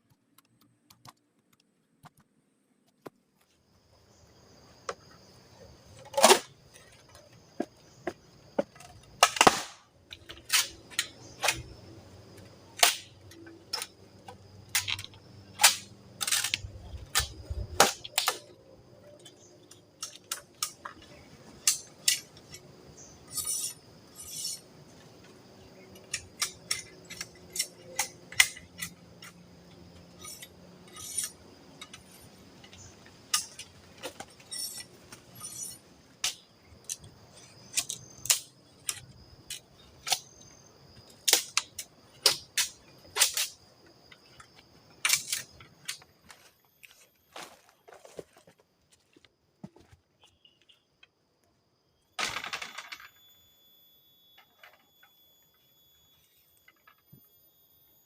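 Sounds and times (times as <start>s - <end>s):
sharp knocks and clicks: 0.0s - 3.2s
faint high-pitched hum: 9.9s - 58.0s.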